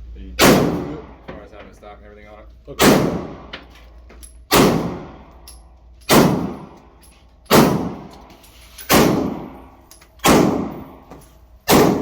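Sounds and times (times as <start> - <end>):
echoing gunshots: 0.4 - 1.2, 2.8 - 3.5, 4.5 - 5.3, 6.1 - 6.8, 7.5 - 8.1, 8.9 - 11.0, 11.7 - 12.0.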